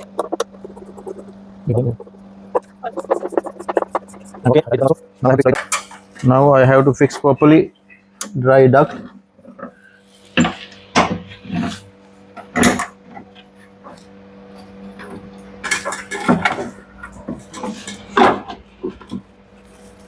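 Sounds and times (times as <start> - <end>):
steady low hum: 0.0 - 20.0
knocks and clatter of parts: 15.0 - 19.3.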